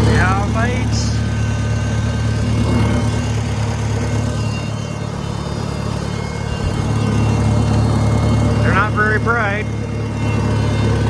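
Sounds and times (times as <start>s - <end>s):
tractor engine idling: 0.0s - 11.0s.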